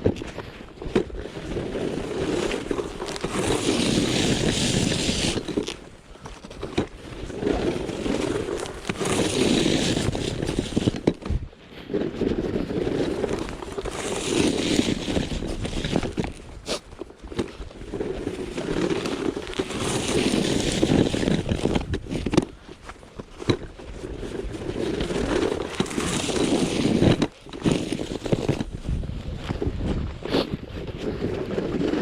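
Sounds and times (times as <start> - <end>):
snow shovel scraping pavement: 0.1 - 32.0.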